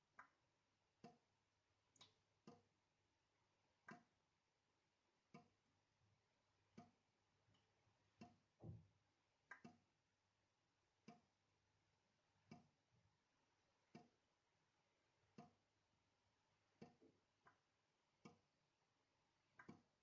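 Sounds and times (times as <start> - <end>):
tap dripping into a sink: 8.2 - 8.9.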